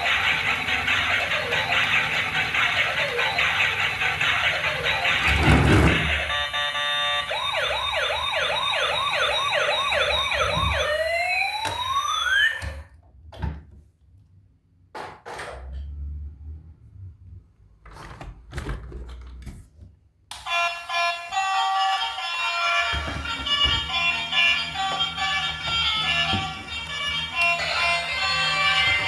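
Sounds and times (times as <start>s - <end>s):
toy electronic siren: 0.0s - 5.2s, 6.2s - 12.9s, 20.5s - 29.0s.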